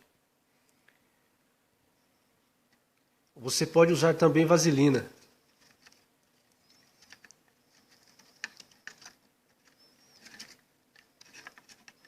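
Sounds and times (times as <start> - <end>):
faint high chirp: 1.8 - 2.6, 6.5 - 8.7, 9.6 - 10.6.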